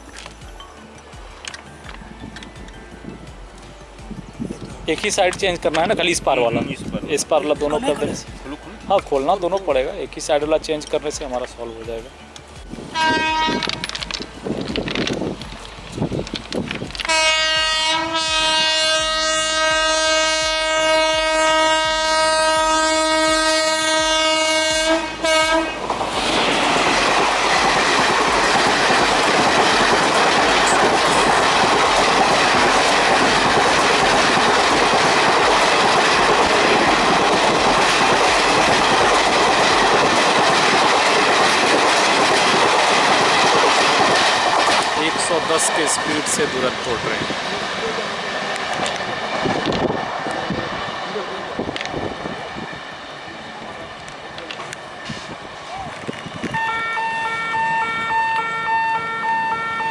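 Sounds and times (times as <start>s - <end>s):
train wheels clattering on rails: 1.2s - 59.9s
train horn blast: 12.9s - 14.1s, 17.0s - 27.0s, 56.4s - 59.9s.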